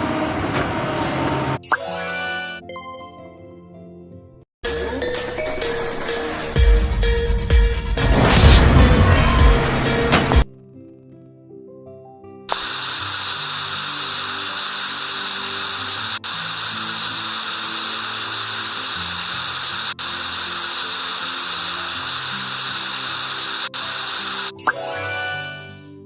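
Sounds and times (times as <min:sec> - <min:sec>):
background music: 0:01.6 - 0:12.9, 0:23.7 - 0:26.0
drill-like machine noise: 0:12.5 - 0:25.8.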